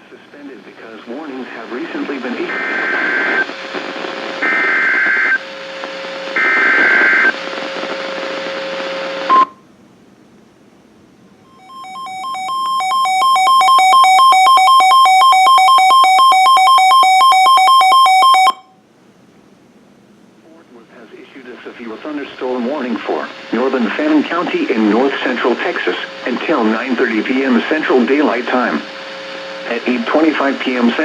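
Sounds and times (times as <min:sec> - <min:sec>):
radio static: 0:00.0 - 0:09.4, 0:20.5 - 0:31.0.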